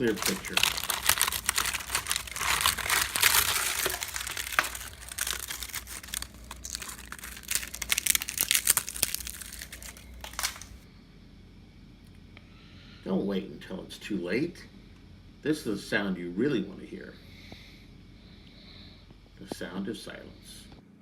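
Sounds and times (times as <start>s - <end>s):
termites chewing wood: 0.0s - 10.8s.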